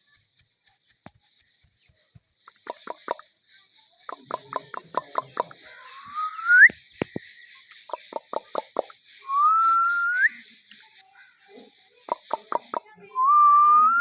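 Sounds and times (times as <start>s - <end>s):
parrot clicking calls: 2.4s - 3.3s, 4.0s - 5.9s, 7.0s - 9.0s, 12.0s - 12.9s
parrot rising whistle: 6.1s - 6.7s, 9.3s - 10.4s.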